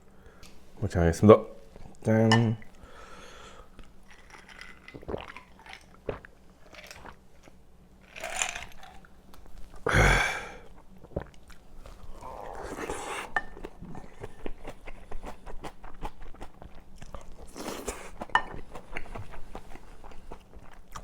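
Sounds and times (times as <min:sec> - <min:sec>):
chewing and crunching food: 0:03.7 - 0:09.9, 0:10.6 - 0:21.0.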